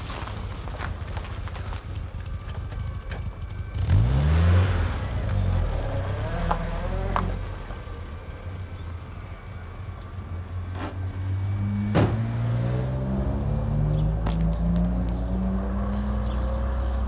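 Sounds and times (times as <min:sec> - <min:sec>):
car engine running: 0:00.0 - 0:17.0.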